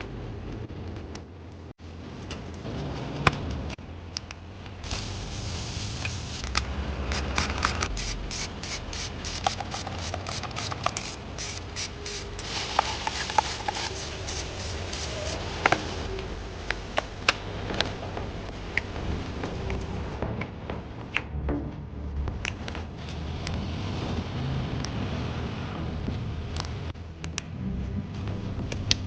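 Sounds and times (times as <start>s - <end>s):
steady low hum: 0.0s - 29.0s
tools clicking and scraping: 6.4s - 15.8s.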